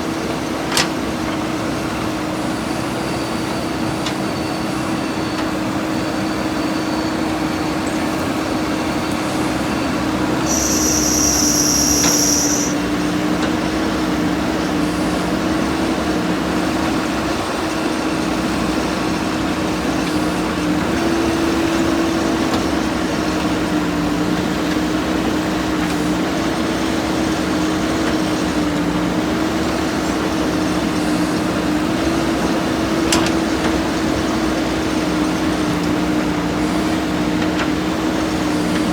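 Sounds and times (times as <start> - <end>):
diesel engine running: 0.0 - 38.9
brief high-pitched whine: 10.4 - 12.8.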